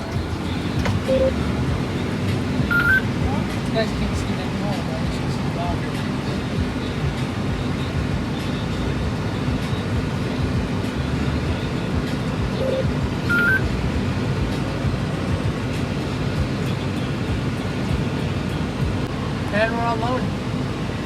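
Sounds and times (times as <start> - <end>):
tractor engine drone: 0.0 - 21.0
two-note electronic beep: 1.0 - 1.5, 2.7 - 3.1, 12.6 - 13.7.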